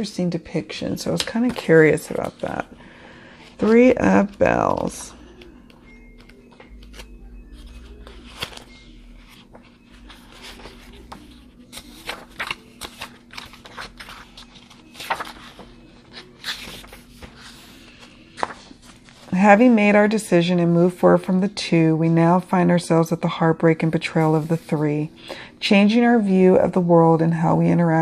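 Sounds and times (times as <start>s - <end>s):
paper pages being leafed through: 1.0s - 2.7s, 3.5s - 20.1s.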